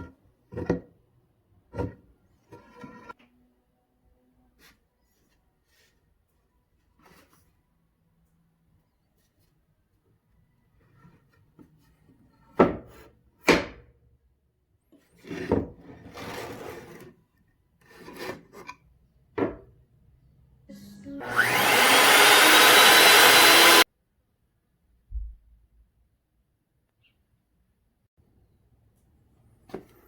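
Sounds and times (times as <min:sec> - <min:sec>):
power tool whining: 0:21.0 - 0:23.8.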